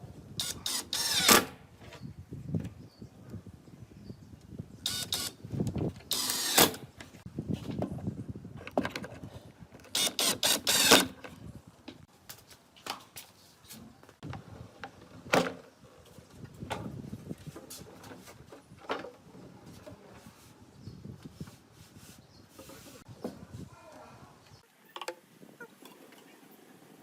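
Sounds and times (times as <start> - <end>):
electric power tool bursts: 6.2 - 6.8.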